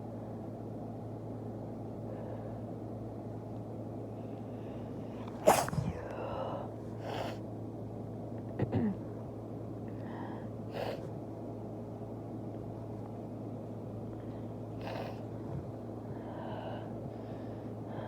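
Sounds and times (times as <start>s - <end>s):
steady low hum: 0.0s - 18.0s
breathing: 2.0s - 2.8s, 4.1s - 7.4s, 9.9s - 11.2s, 14.1s - 18.0s
short vocal burst: 5.4s - 6.0s
person sneezing: 5.4s - 6.1s.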